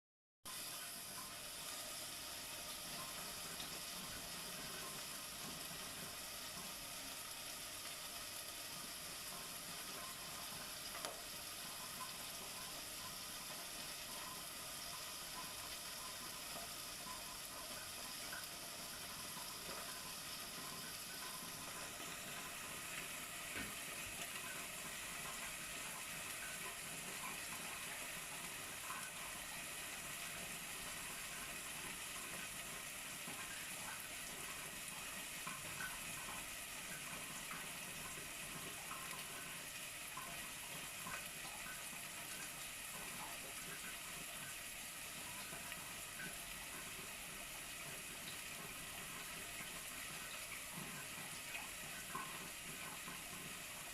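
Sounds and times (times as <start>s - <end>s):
water running from a tap: 0.5s - 53.9s
small ticks and splashes: 8.8s - 44.6s.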